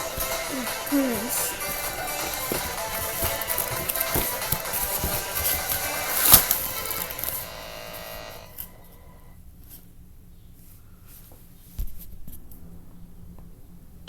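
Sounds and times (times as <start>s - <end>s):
packaging rubbing and scraping: 0.0s - 8.8s.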